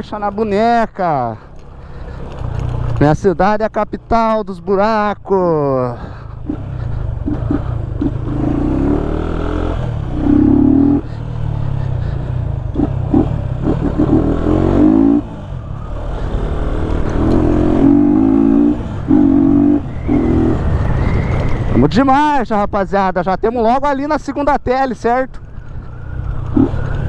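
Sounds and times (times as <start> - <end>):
motorcycle engine accelerating: 1.5 - 3.4, 6.0 - 22.0, 25.4 - 27.0.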